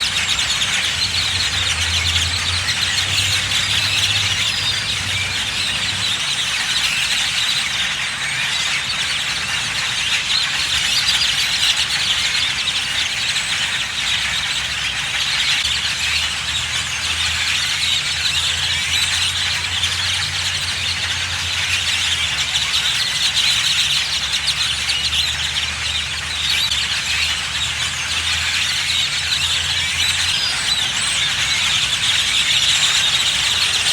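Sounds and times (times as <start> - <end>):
low engine hum: 0.0 - 6.7
large flock of birds calling: 0.0 - 33.9.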